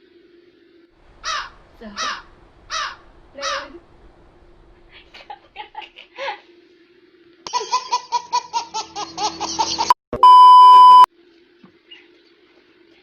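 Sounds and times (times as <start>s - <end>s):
laughter: 5.0s - 6.5s
steady high beep: 10.2s - 11.1s.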